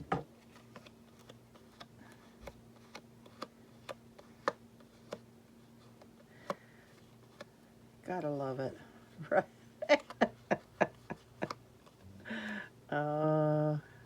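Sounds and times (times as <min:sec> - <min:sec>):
faint steady hum: 0:00.0 - 0:14.0
paper pieces clicking and tapping: 0:00.5 - 0:05.2.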